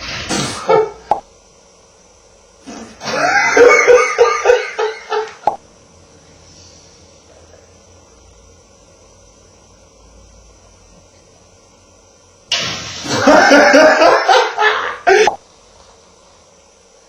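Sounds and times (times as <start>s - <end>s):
person laughing: 3.0s - 5.4s, 13.1s - 15.4s.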